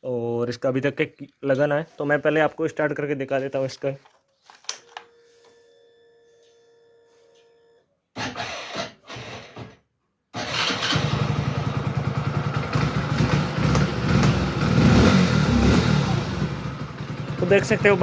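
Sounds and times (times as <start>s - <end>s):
motorcycle engine cranking and running: 10.4s - 18.0s.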